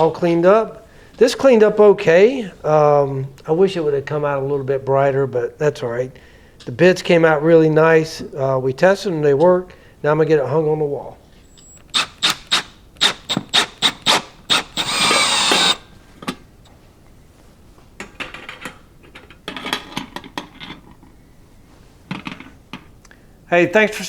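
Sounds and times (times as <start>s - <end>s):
drill driving a screw: 11.5s - 15.9s.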